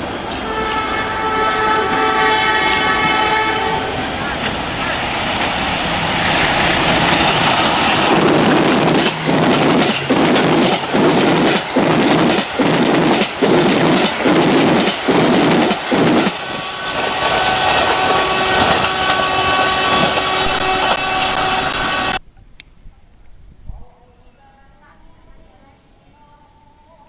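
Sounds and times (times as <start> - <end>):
train rushing past: 0.0 - 22.2.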